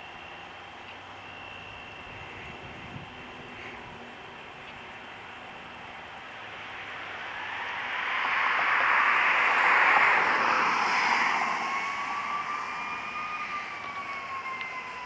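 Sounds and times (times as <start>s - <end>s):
emergency siren wailing: 0.0s - 15.0s
vehicle passing by: 5.7s - 15.0s.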